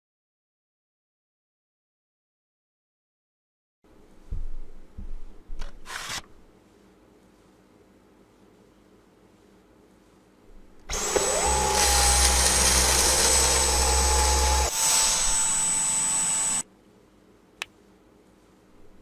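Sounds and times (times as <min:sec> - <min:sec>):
vacuum cleaner motor whining: 0:10.9 - 0:16.6.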